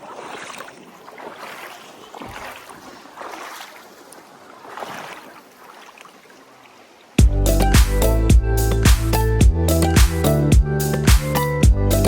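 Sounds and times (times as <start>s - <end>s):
creek water splashing and rushing: 0.0s - 7.2s.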